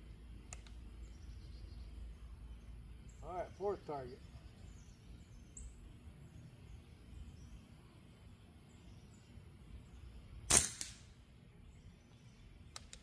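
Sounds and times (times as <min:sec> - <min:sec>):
small click: 0:00.5 - 0:00.8, 0:12.7 - 0:13.0
rifle shot: 0:10.5 - 0:11.2.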